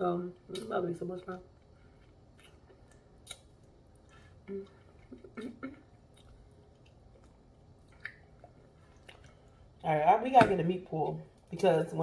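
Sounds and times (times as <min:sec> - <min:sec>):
chewing and mouth smacks: 0:01.3 - 0:09.8.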